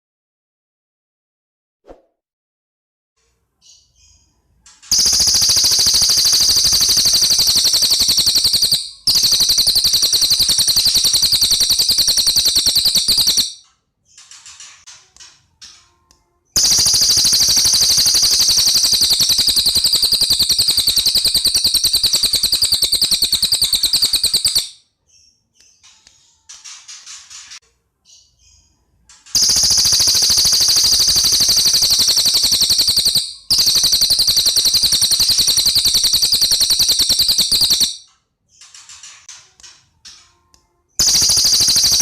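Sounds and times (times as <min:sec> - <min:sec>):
bird chirps: 0:03.5 - 0:13.6, 0:16.6 - 0:26.4, 0:28.0 - 0:38.8, 0:41.0 - 0:42.0.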